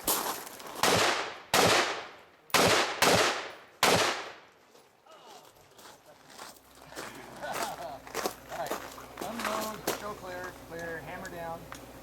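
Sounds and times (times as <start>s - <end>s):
rifle shots with echo: 0.8s - 4.4s.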